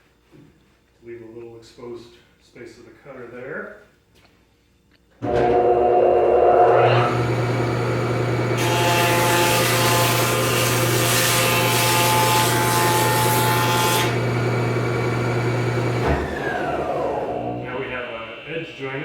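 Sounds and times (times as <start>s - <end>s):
board being cut: 5.2s - 17.8s
jointer cutterhead humming: 5.2s - 18.9s.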